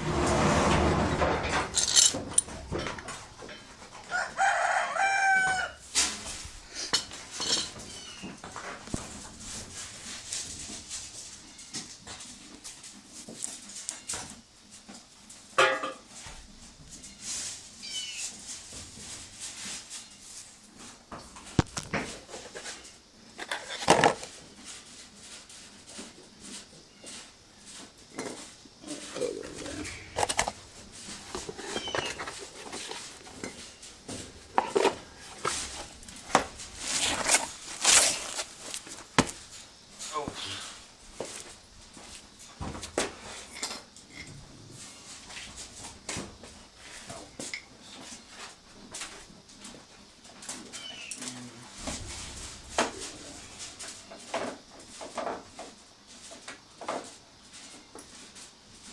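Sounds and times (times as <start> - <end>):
metal parts scraping: 0.8 - 2.6, 29.2 - 33.7
metal tools clinking: 1.5 - 3.7, 7.0 - 7.8.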